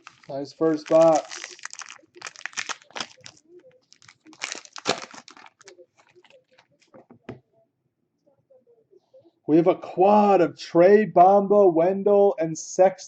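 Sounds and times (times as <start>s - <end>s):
plastic packaging crinkling and tearing: 0.0s - 6.9s.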